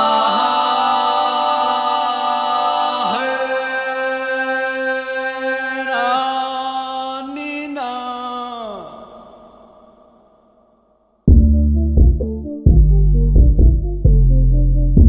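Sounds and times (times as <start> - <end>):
voices chanting chords: 0.0 - 7.4
steady low drone: 11.3 - 15.0.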